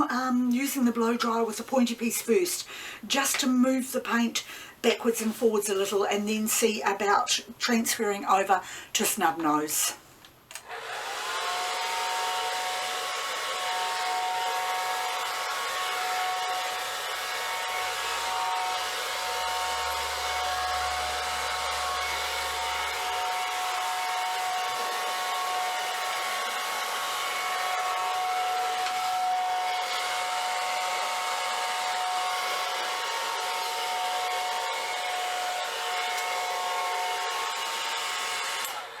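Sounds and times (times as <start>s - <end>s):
hair dryer blowing: 10.6s - 39.0s.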